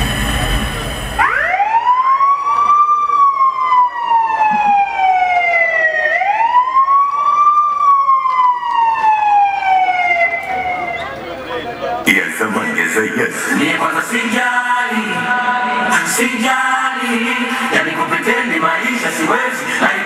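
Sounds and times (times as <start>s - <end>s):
siren wailing: 1.2s - 11.4s.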